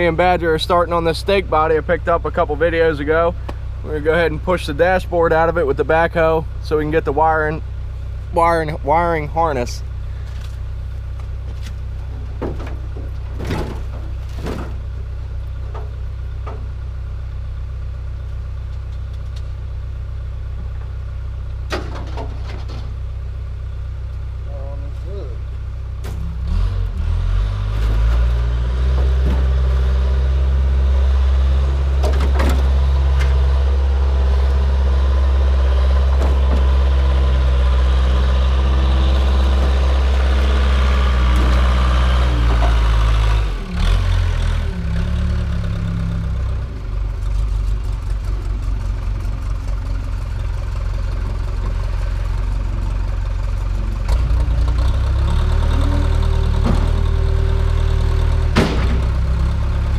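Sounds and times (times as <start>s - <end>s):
diesel engine running under load: 0.0s - 59.9s
sharp knocks: 58.6s - 59.2s.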